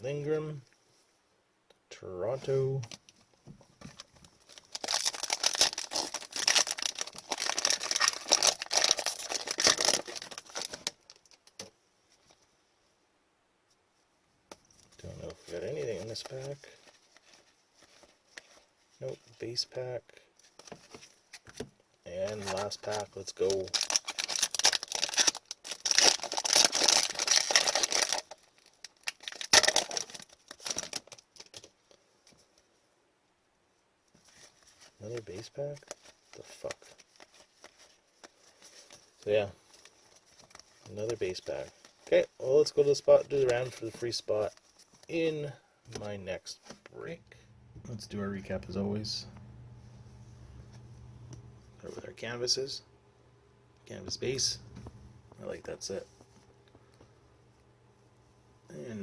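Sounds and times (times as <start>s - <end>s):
foil wrapper crinkling: 4.0s - 11.7s, 22.1s - 31.9s, 34.3s - 45.2s.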